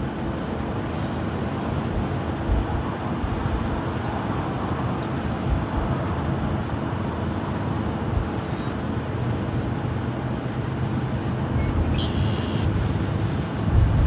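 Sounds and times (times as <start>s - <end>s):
jet engines roaring: 0.0s - 14.0s
wind thumps on microphone: 12.7s - 14.0s.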